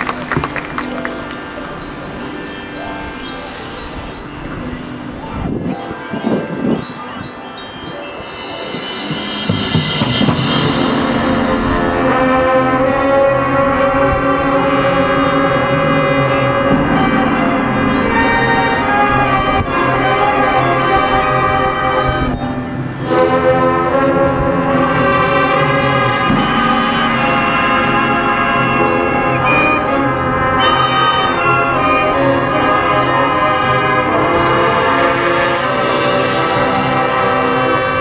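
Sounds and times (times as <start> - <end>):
marching band playing: 0.0 - 38.0
cymbal crashes: 8.2 - 13.8, 24.6 - 29.6.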